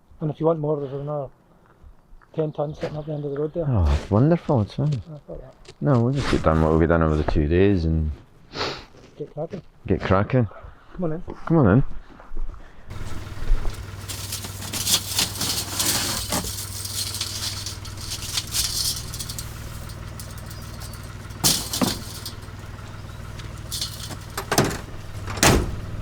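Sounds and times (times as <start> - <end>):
engine running steadily: 12.9 - 26.0
loud metallic knocks: 12.9 - 26.0
rattling: 12.9 - 26.0.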